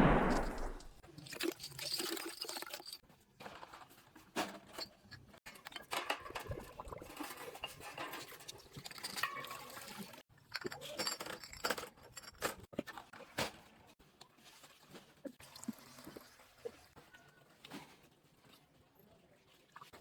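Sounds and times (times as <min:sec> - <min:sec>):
crackles and clicks: 0:00.0 - 0:01.0.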